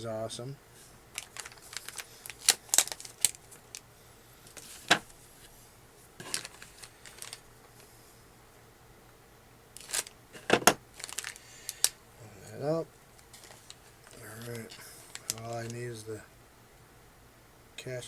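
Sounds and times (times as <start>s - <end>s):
plastic packaging crinkling and clicking: 1.1s - 5.2s, 6.2s - 7.8s, 9.8s - 12.0s, 13.1s - 15.9s
small plastic parts tapping: 1.2s - 3.8s.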